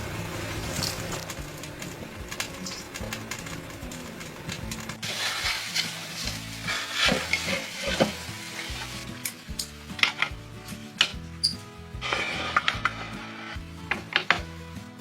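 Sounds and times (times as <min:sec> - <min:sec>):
utensil clicks stirring: 0:00.7 - 0:10.4
food sizzling in a pan: 0:05.0 - 0:09.6.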